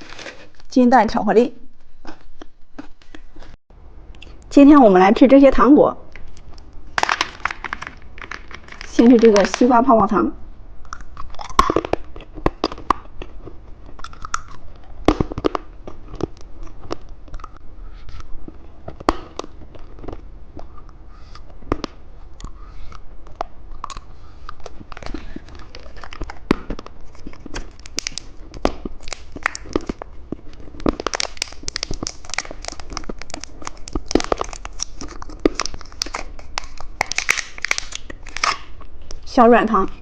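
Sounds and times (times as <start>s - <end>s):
plastic wrapper crinkling and tearing: 6.2s - 9.8s, 23.3s - 39.2s.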